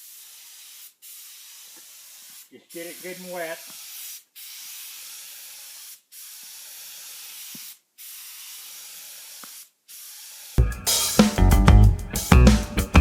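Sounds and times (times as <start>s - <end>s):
paint spray gun hissing: 0.0s - 11.3s
loud drum-backed music: 10.6s - 13.0s.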